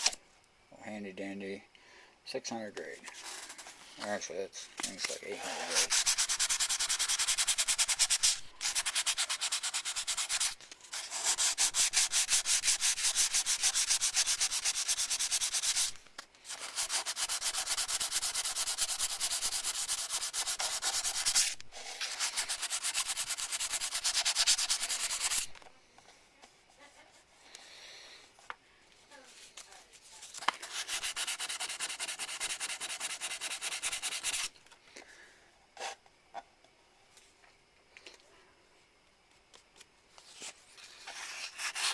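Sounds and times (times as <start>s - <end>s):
sandpaper rubbing on plastic: 4.9s - 25.6s, 30.3s - 34.5s, 41.0s - 41.9s.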